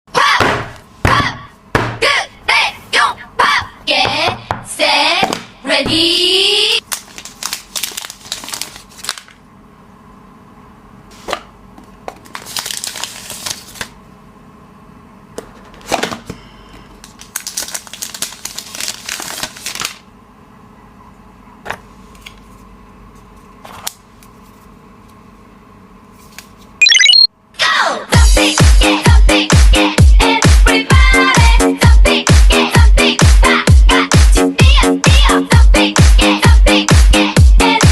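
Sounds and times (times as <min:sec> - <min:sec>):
plastic wrap crinkling and tearing: 0:06.8 - 0:09.4, 0:12.2 - 0:14.0, 0:17.0 - 0:20.0.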